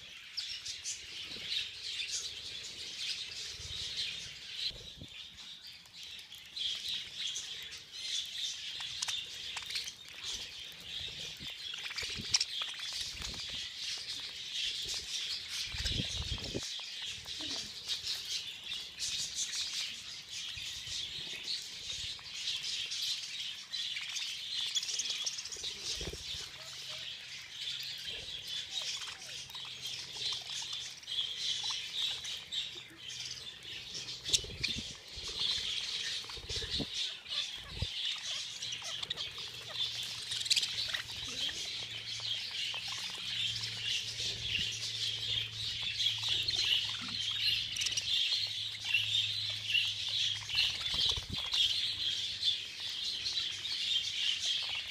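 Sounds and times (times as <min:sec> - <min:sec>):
budgerigars chattering and chirping: 0:00.0 - 0:54.9.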